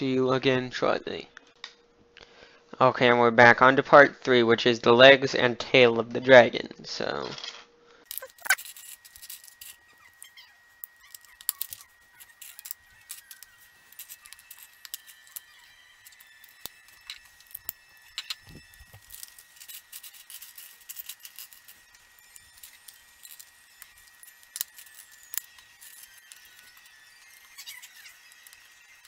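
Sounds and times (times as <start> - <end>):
plastic bricks clicking and rattling: 8.1 - 10.3, 10.9 - 28.7.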